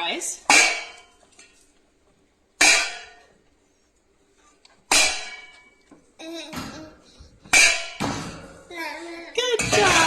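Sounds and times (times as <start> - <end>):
metal pots banged together: 0.5 - 1.2, 2.6 - 3.3, 4.9 - 5.8, 7.5 - 8.7, 9.4 - 10.0.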